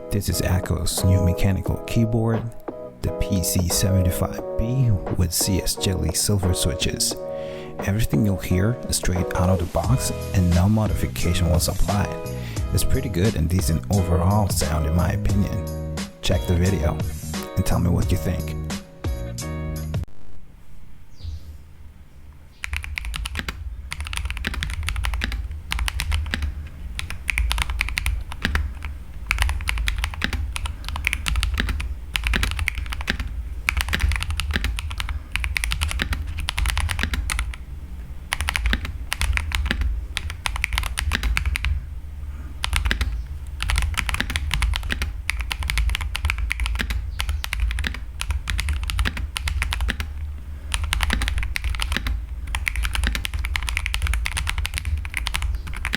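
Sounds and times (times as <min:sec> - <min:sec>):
fast typing on mechanical keyboard: 0:09.3 - 0:13.8, 0:22.6 - 0:37.6, 0:38.3 - 0:41.8, 0:42.6 - 0:55.9.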